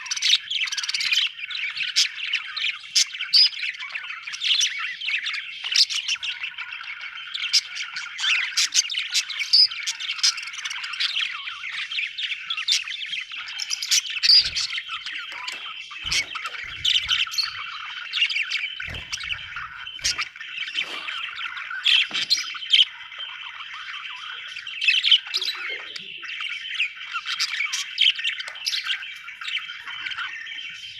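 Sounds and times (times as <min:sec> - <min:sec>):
budgerigars chirping: 0:00.0 - 0:30.9
sharp squawks: 0:12.7 - 0:26.2.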